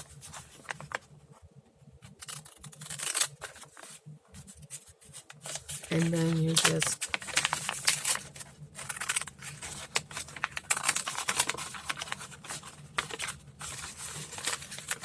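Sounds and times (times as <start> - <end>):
scissors cutting paper: 2.1 - 3.6, 8.8 - 15.0
paper rustling: 2.2 - 15.0.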